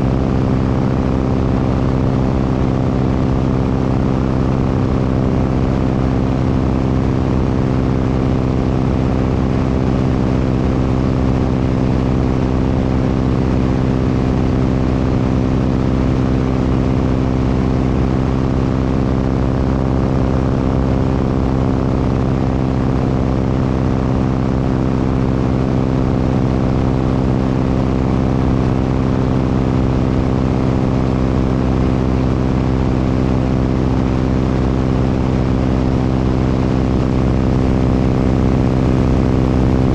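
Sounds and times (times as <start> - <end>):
propeller airplane engine: 0.0 - 39.9
wind rushing over microphone: 36.2 - 39.9.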